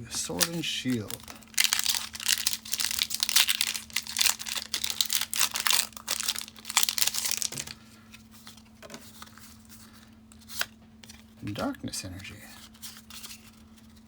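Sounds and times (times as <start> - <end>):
foil wrapper crinkling and tearing: 0.2 - 7.8.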